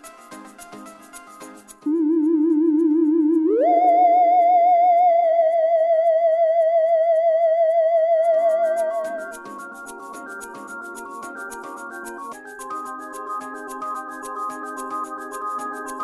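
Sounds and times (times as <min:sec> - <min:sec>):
held theremin-like note with vibrato: 0:01.9 - 0:09.4.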